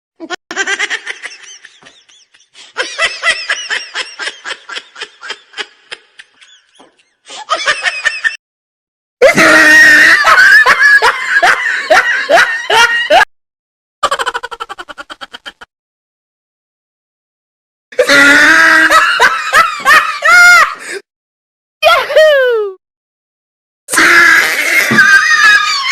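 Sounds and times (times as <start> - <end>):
rhythmic ha-ha laughs: 0.2 - 8.4, 10.3 - 13.3, 14.0 - 15.7
shrill shrieking laugh: 9.2 - 13.2, 18.0 - 20.8, 23.9 - 25.9.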